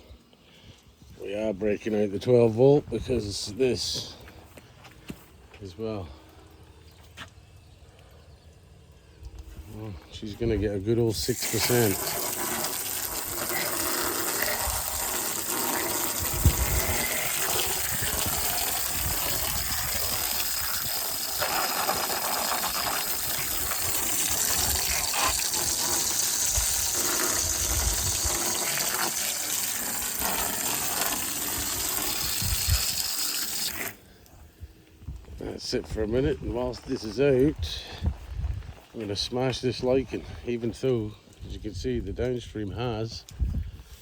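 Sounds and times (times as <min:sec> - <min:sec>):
hose spraying with hissing gush: 0:10.9 - 0:34.0.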